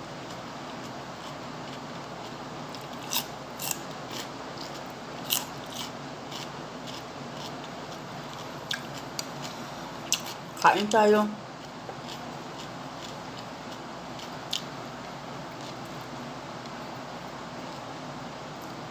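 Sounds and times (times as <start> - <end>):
crisp chewing crunches: 0.3 - 10.4, 11.6 - 14.8.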